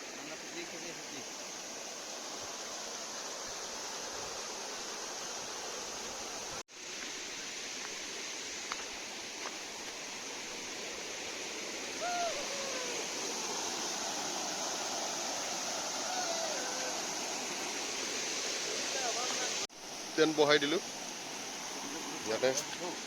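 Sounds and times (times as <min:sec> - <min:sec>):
waterfall rushing: 0:09.2 - 0:23.0
short falling call: 0:12.0 - 0:13.1.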